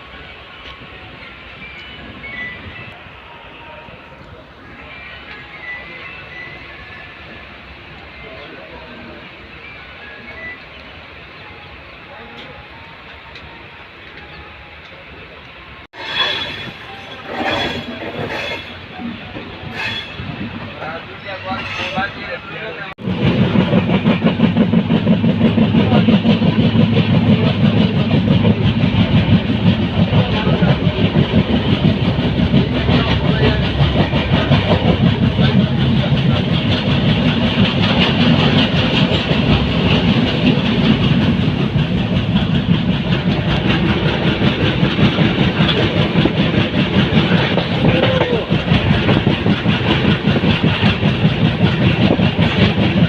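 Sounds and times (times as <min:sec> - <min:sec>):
train rumbling: 0:00.0 - 0:53.0
wheels clattering on rails: 0:23.0 - 0:53.0.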